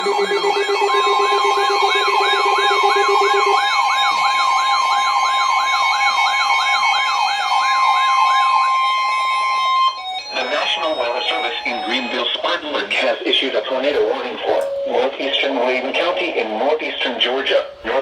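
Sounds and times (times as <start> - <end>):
steady high tone: 0.0 - 4.6, 9.9 - 13.4, 14.3 - 16.5
electronic siren yelping: 0.0 - 12.8
lower steady tone: 14.5 - 15.4.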